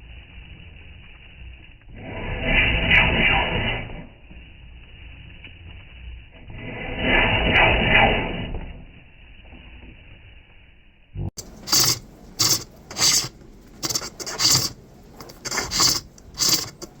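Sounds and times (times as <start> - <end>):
lathe tool scraping wood: 0.0 - 4.1, 6.4 - 8.8, 11.4 - 17.0.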